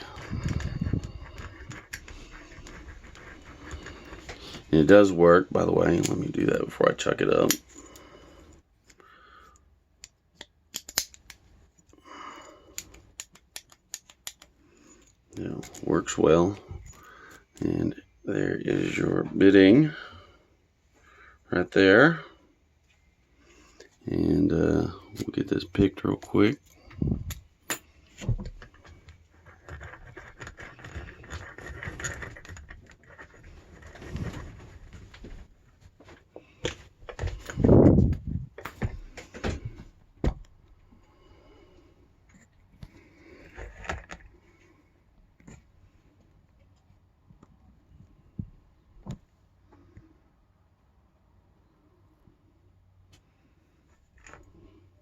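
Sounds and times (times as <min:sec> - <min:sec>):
rustling and scraping: 0:00.0 - 0:08.5, 0:22.8 - 0:50.0
padlock metallic clicks: 0:10.0 - 0:11.4.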